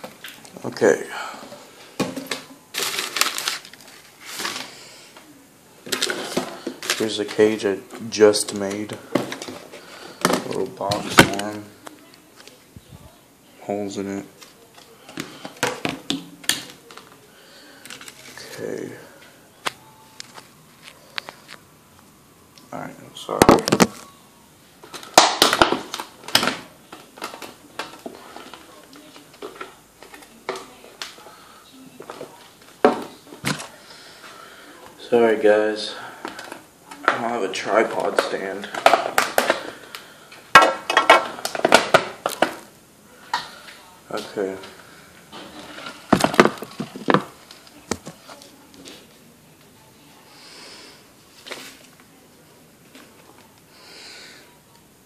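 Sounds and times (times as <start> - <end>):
packaging rustling and clattering: 2.0 - 4.8, 5.8 - 12.6, 17.8 - 18.7, 24.8 - 31.2, 45.3 - 49.0.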